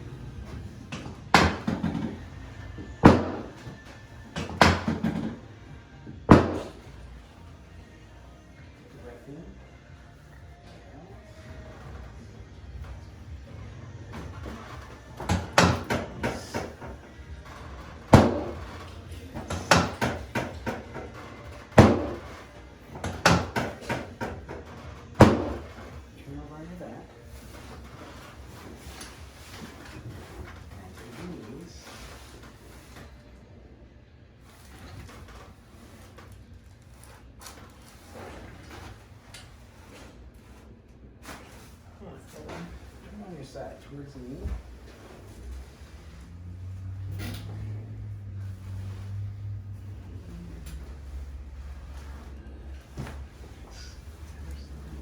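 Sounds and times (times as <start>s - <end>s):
loud knocks on treatment table: 3.0s - 3.6s, 6.3s - 6.8s, 21.7s - 22.2s.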